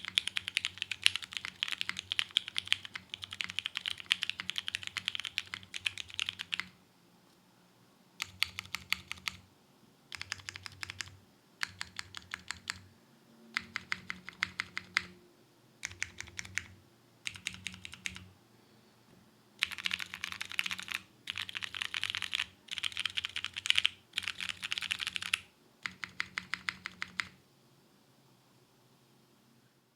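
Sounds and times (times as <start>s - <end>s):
mechanical keyboard typing: 0.0s - 6.8s, 8.2s - 9.4s, 10.1s - 12.9s, 13.6s - 15.2s, 15.8s - 18.3s, 19.6s - 27.4s.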